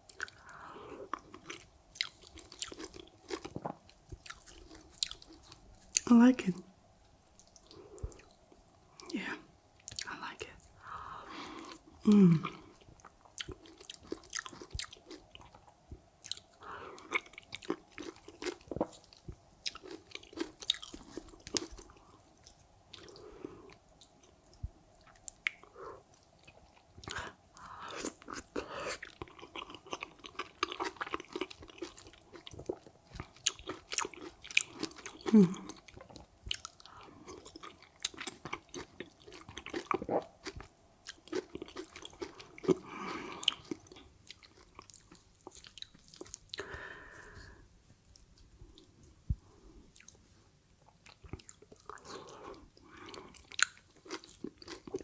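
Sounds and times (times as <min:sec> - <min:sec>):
mouth clicks and chewing: 0:01.1 - 0:06.1, 0:12.8 - 0:46.7, 0:50.9 - 0:55.0
person humming: 0:12.0 - 0:12.6.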